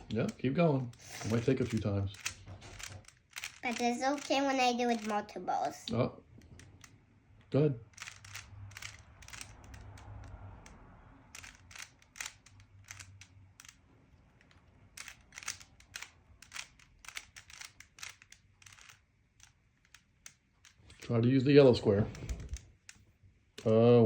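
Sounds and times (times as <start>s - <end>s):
plastic puzzle cube clicking: 0.2s - 5.2s, 7.9s - 21.0s.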